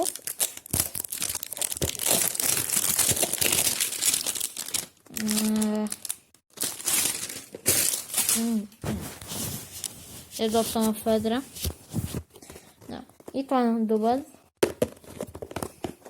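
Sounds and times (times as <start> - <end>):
packaging crinkling and tearing: 0.0 - 10.0.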